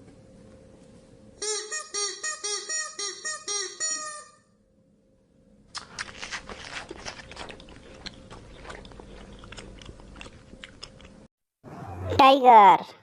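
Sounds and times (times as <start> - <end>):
animal chewing crunchily: 5.8 - 11.3.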